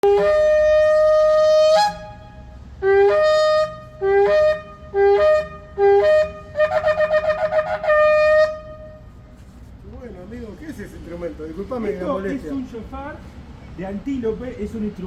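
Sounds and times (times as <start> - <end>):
shofar blasts: 0.0 - 9.2.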